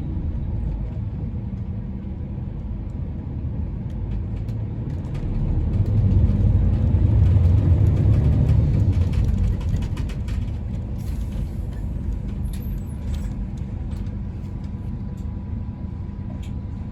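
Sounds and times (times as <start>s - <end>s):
bus diesel engine: 0.0s - 16.9s
bus body rattling and knocking: 3.0s - 15.4s.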